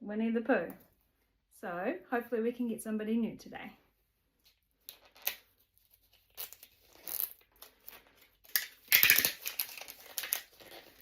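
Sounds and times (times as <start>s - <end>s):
plastic packaging tearing and crinkling: 5.0s - 11.0s.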